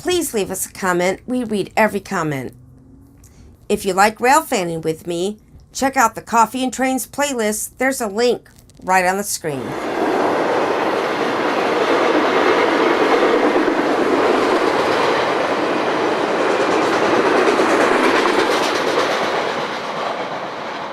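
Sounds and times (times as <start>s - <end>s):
train wheels on rails: 9.7s - 20.9s.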